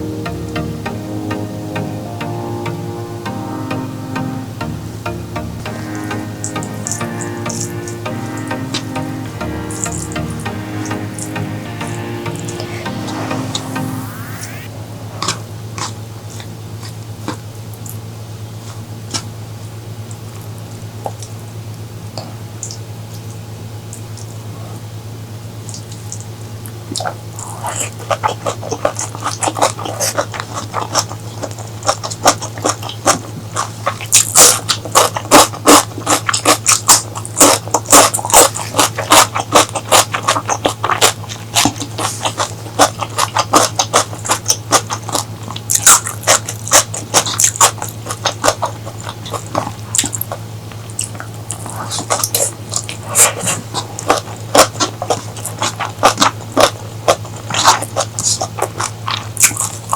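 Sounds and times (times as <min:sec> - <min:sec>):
chewing and wet mouth smacks: 0:28.0 - 0:59.9.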